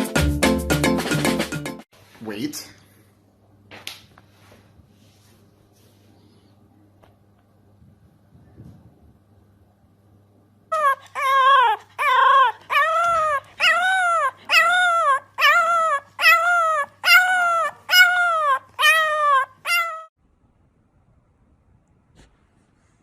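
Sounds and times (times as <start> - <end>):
dog whining howls: 10.7 - 20.1.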